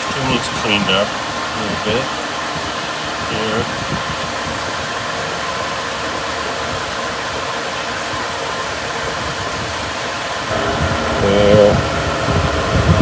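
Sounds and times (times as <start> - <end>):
steady rushing noise: 0.0 - 13.0.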